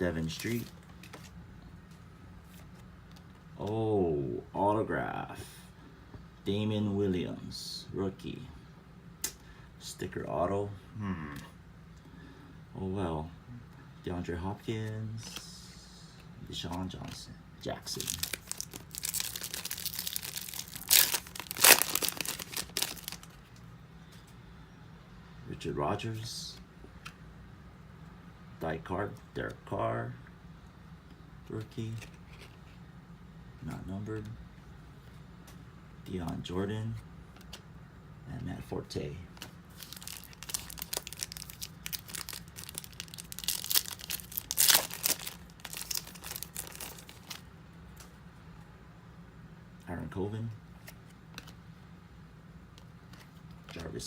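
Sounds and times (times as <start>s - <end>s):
foil wrapper ripping: 17.9s - 23.3s, 39.7s - 47.4s
foil wrapper crinkling: 17.9s - 23.4s, 39.4s - 47.4s.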